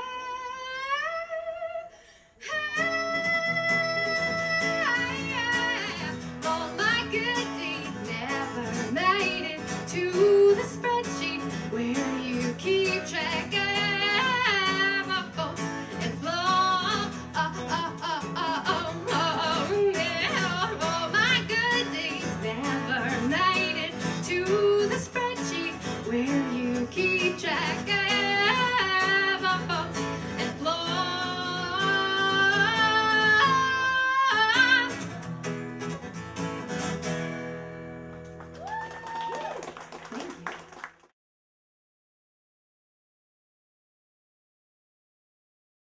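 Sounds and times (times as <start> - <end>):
woman singing: 0.0 - 35.2
strummed acoustic guitar: 2.7 - 38.4.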